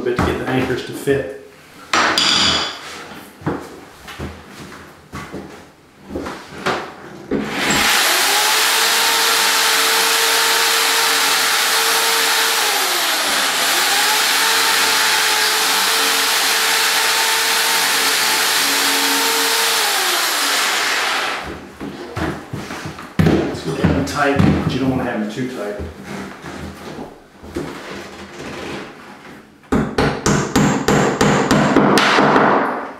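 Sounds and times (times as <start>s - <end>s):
electric drill running: 7.5s - 21.5s.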